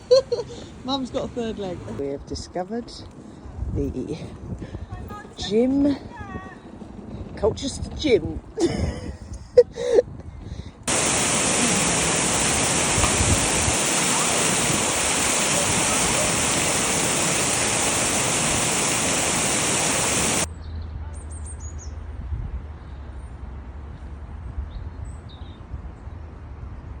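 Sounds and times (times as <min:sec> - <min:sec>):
loud steady rushing noise: 0:10.9 - 0:20.5.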